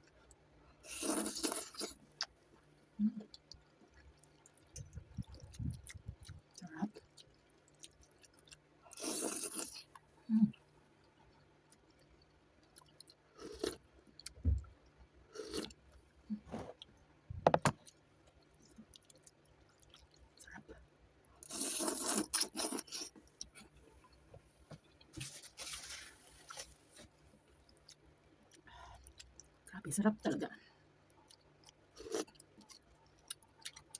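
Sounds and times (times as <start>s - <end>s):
chewing noodles: 3.2s - 10.0s, 17.8s - 20.6s, 21.4s - 23.8s, 31.1s - 33.9s.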